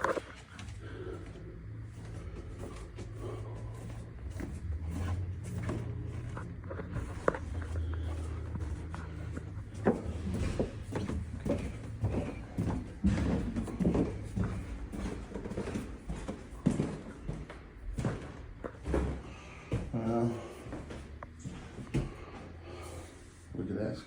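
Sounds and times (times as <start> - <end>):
low steady hum: 0.0 - 24.0
light knocks and clatter: 4.3 - 20.0.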